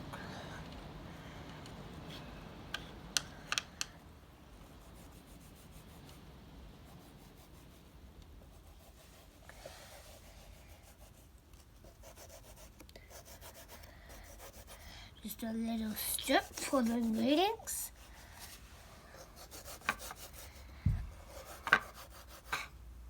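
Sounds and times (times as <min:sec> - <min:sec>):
faint rubbing and handling: 0:08.4 - 0:12.8, 0:13.4 - 0:22.7.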